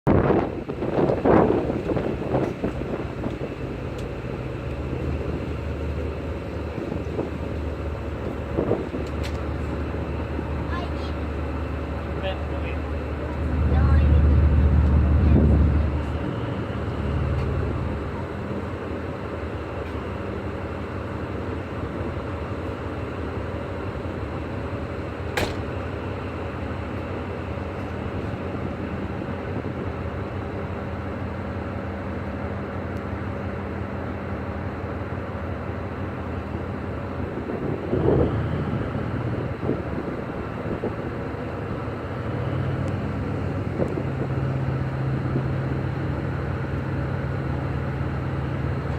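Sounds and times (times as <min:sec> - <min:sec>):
wind buffeting microphone: 0:00.1 - 0:19.8, 0:25.6 - 0:31.5, 0:35.5 - 0:48.9
boat engine droning: 0:00.1 - 0:48.9.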